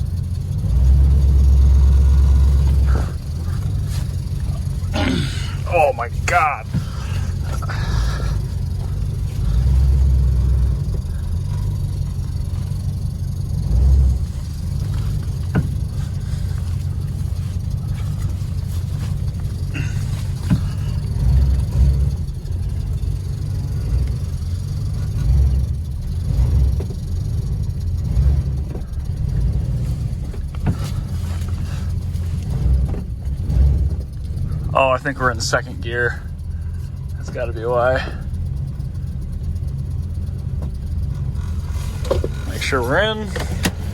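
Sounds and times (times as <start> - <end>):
car engine and road rumble: 0.0 - 43.9.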